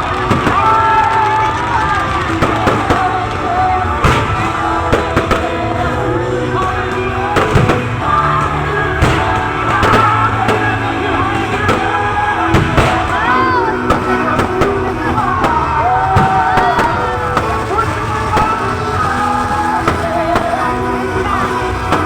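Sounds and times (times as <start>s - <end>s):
fireworks bangs: 0.0s - 22.0s
loud music: 0.0s - 22.0s.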